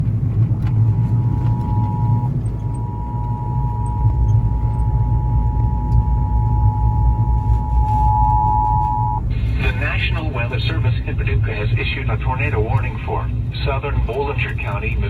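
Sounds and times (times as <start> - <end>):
loud low rumble: 0.0 - 15.0
two-tone alert beep: 1.2 - 9.2.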